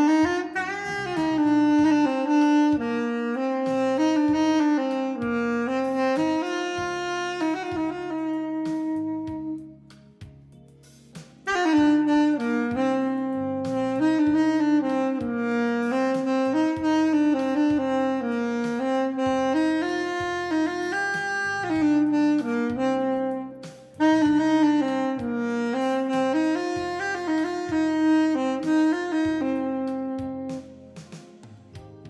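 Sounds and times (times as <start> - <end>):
backing track with pulsing bass: 0.0 - 32.0
saxophone melody with effects: 0.0 - 32.0.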